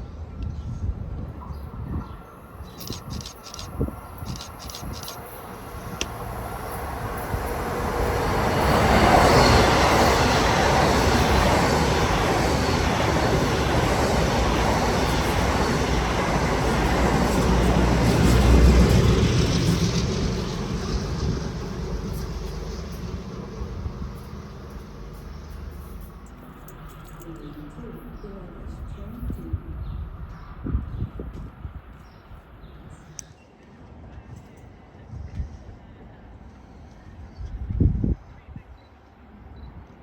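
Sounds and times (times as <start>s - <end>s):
train passing at speed: 0.0s - 40.0s
sharp clicks: 2.7s - 5.4s.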